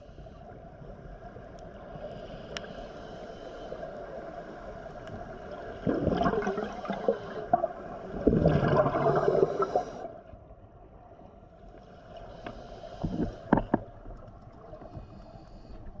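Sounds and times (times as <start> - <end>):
underwater exhaled bubbles gurgling: 4.4 - 10.3.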